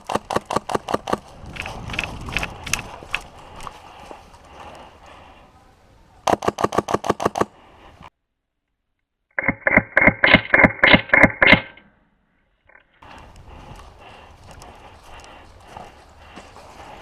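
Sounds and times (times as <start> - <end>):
rapid airsoft gunfire: 0.0 - 2.5, 6.3 - 7.5.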